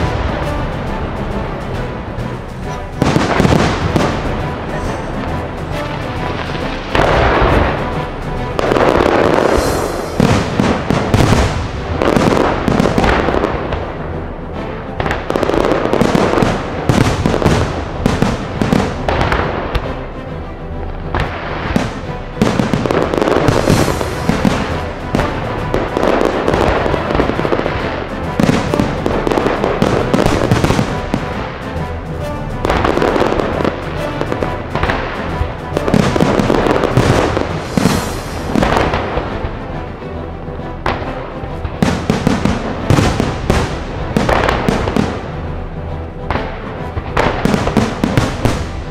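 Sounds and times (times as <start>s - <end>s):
fireworks bursting and crackling: 0.0s - 14.2s, 15.0s - 20.0s, 21.1s - 39.9s, 40.9s - 45.5s, 46.3s - 48.9s
music playing: 0.0s - 48.9s.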